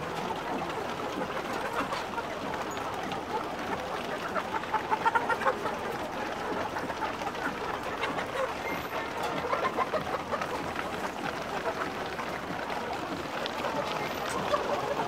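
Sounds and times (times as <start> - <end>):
chickens clucking and chirping: 0.0 - 15.0.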